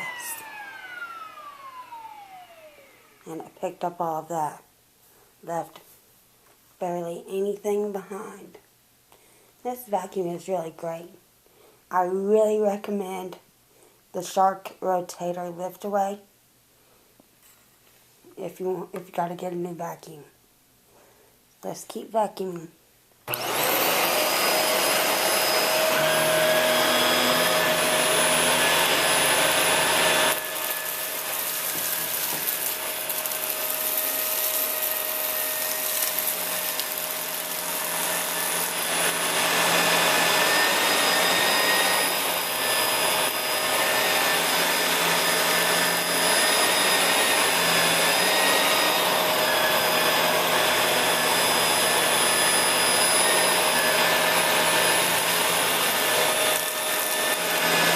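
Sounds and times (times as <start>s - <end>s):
vacuum cleaner whining: 0.0s - 3.4s, 23.3s - 57.9s.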